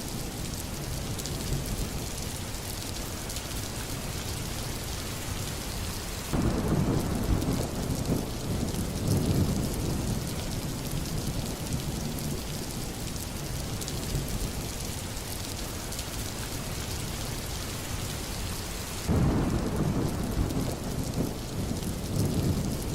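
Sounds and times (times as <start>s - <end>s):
steady rain: 0.0s - 22.9s
thunder rumbling: 6.3s - 12.8s, 19.1s - 22.9s.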